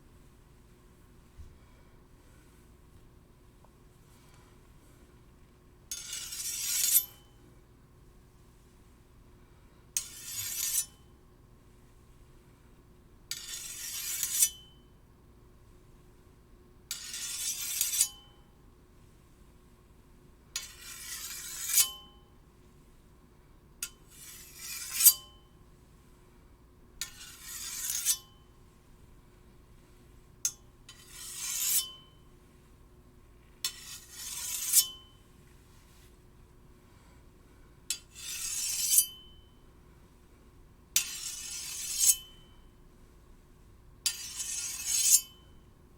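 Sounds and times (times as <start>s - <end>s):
steel blade scraping steel: 5.9s - 7.3s, 10.0s - 11.0s, 13.3s - 14.8s, 16.9s - 18.3s, 20.6s - 22.1s, 23.8s - 25.4s, 27.0s - 28.4s, 30.5s - 32.2s, 33.6s - 35.2s, 37.9s - 39.5s, 41.0s - 42.7s, 44.1s - 45.6s
metallic clink and ring: 38.6s - 39.6s.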